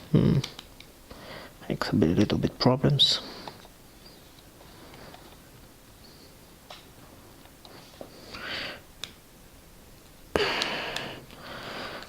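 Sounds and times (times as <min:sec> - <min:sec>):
heavy breathing: 0:01.1 - 0:01.6, 0:07.8 - 0:08.9, 0:10.3 - 0:12.0.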